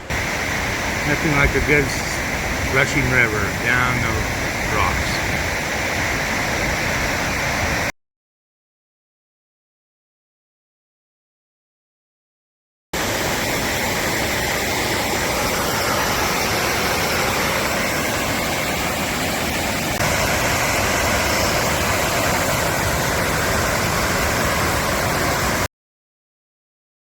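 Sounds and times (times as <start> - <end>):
river rushing down falls: 0.0 - 7.9, 13.0 - 25.7.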